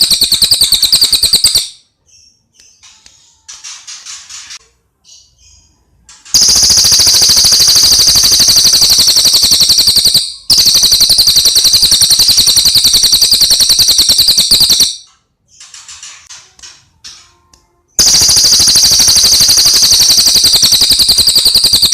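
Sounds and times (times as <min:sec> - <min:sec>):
faint high bird chirps: 0:00.0 - 0:04.3, 0:05.0 - 0:16.0.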